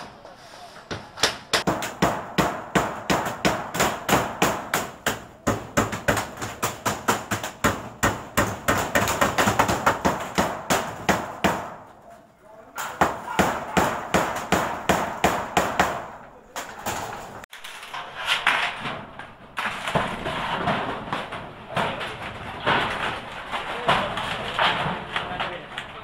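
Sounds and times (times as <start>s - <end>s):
rapid hammer blows: 0.9s - 11.9s, 12.8s - 16.2s.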